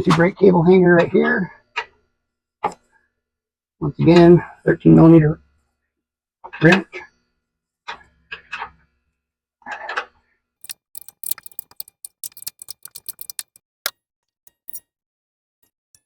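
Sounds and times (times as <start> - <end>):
ratcheting wrench clicking: 10.6 - 13.6, 14.5 - 14.8.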